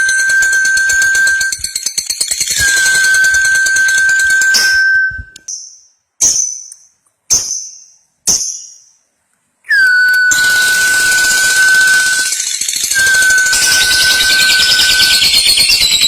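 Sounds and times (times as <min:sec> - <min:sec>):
steady high tone: 0:00.0 - 0:01.8, 0:02.6 - 0:05.4, 0:09.7 - 0:15.4
ringing dings: 0:00.0 - 0:05.3, 0:10.1 - 0:16.0.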